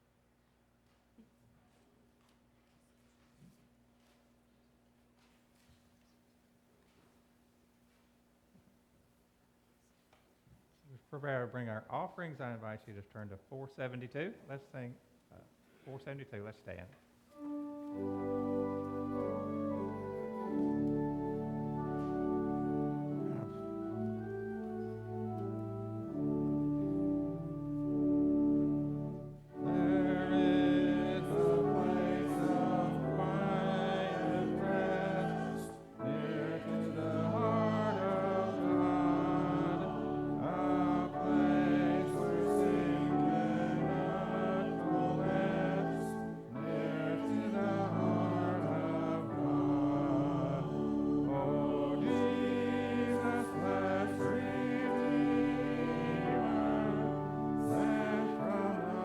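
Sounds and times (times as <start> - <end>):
instrumental accompaniment: 17.3 - 59.0
congregation singing a hymn: 17.4 - 59.0.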